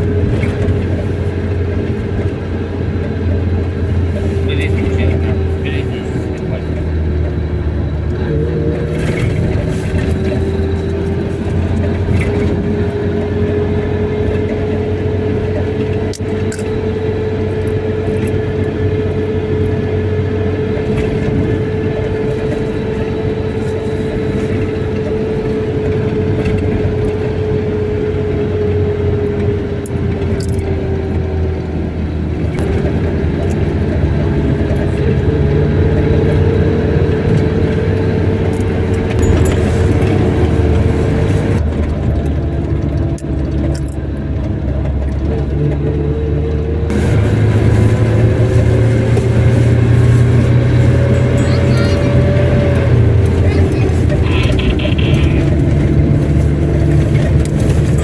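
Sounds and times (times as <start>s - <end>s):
car engine and road rumble: 0.0s - 58.0s.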